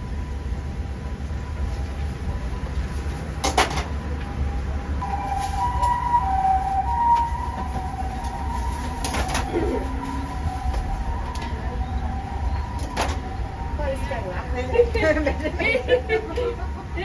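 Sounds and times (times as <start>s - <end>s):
wavering high tone: 5.0s - 16.6s
low hum: 5.0s - 16.8s.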